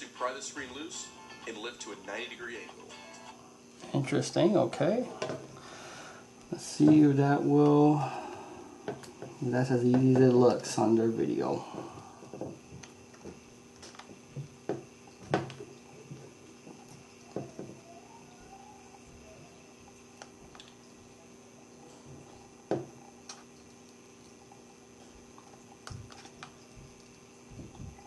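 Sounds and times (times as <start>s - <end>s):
faint steady hum: 0.0s - 28.0s.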